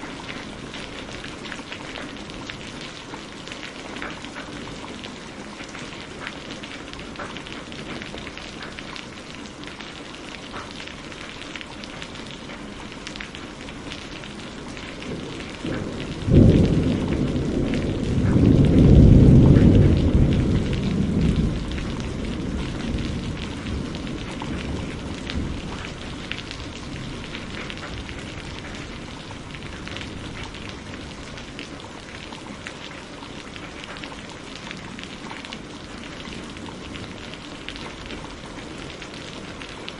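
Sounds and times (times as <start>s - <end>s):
steady rain falling: 0.0s - 39.9s
thunderclap: 15.0s - 31.4s.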